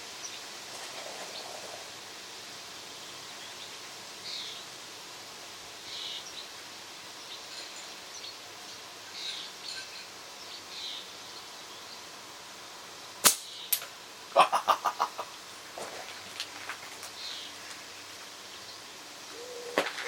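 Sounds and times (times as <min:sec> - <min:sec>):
outdoor background noise: 0:00.0 - 0:20.0
slingshot crack: 0:13.2 - 0:13.9.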